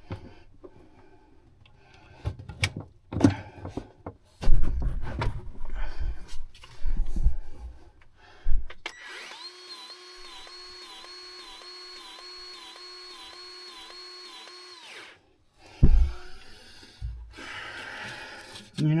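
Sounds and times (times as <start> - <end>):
grease gun motor whining: 8.8 - 15.2.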